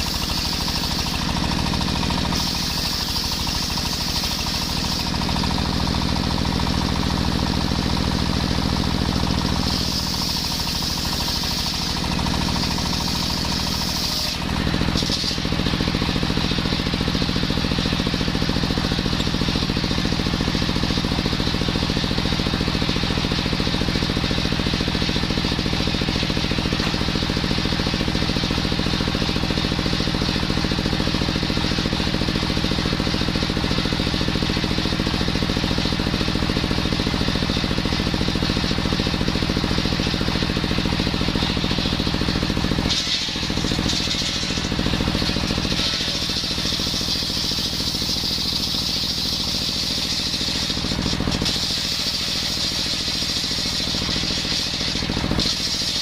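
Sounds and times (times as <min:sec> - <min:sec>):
high saw whine: 0:00.0 - 0:06.6, 0:08.2 - 0:21.0
engine-driven circular saw running: 0:00.0 - 0:56.0.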